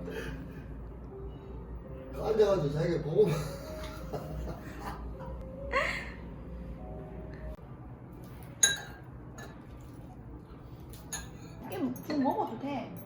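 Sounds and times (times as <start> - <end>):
low steady hum: 0.0 - 12.2
glass clinking on hard surface: 8.6 - 9.6, 11.1 - 12.2.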